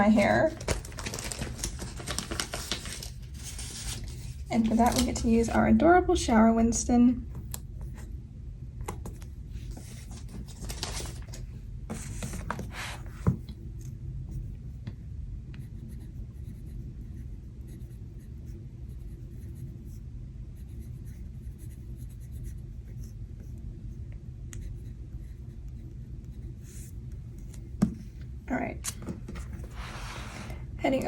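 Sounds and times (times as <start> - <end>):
paper rustling: 0.2 - 5.6, 9.6 - 13.1.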